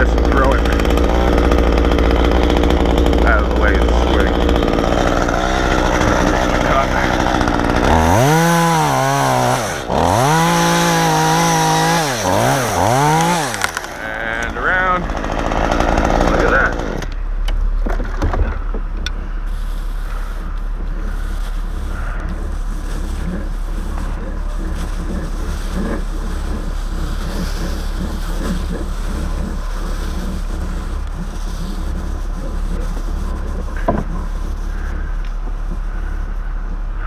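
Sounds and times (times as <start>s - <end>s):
low engine-like rumble: 16.2s - 37.0s.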